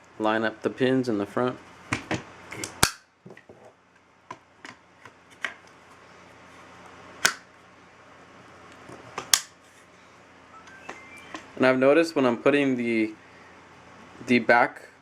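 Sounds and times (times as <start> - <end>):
sharp metal snaps: 2.6 - 3.1, 7.2 - 7.5, 9.2 - 9.6.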